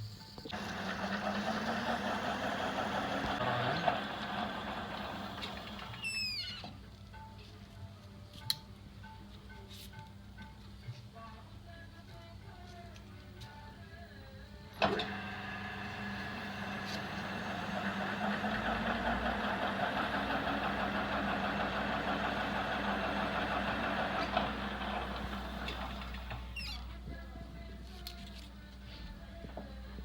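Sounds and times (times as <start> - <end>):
lathe running: 0.5 - 6.0, 14.8 - 26.4.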